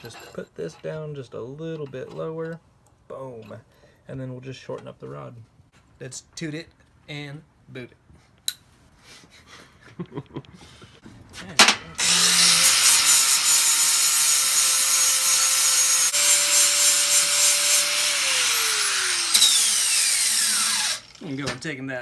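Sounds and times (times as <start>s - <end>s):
power tool cutting steel: 12.0s - 21.6s.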